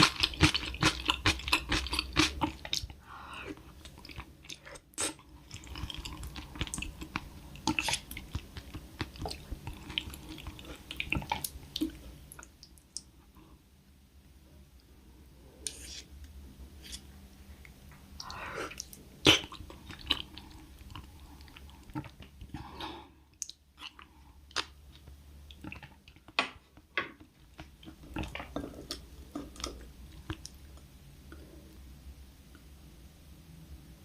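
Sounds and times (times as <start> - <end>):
chewing with wet mouth clicks: 0.0 - 3.0, 3.8 - 13.1.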